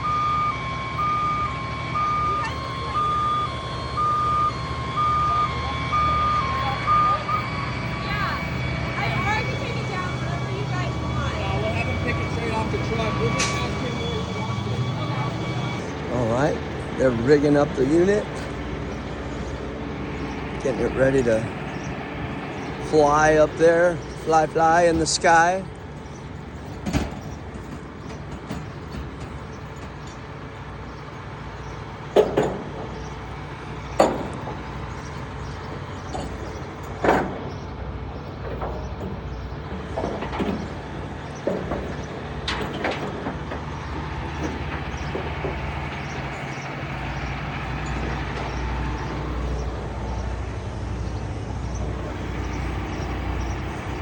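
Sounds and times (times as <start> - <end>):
truck engine rumbling: 0.0 - 54.0.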